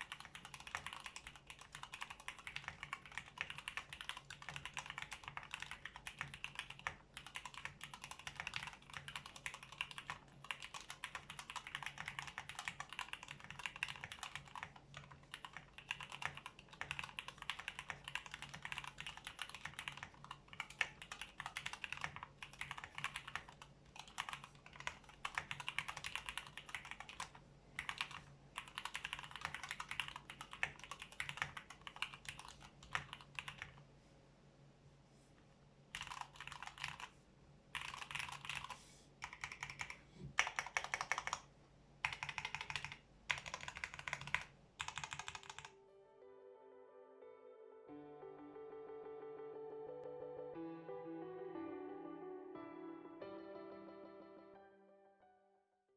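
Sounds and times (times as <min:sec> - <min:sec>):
fast mechanical keyboard typing: 0:00.0 - 0:33.8, 0:35.9 - 0:37.1, 0:37.7 - 0:45.7.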